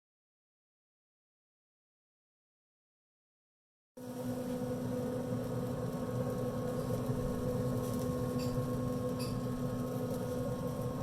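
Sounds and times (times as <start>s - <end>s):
machine hum: 4.0s - 11.0s.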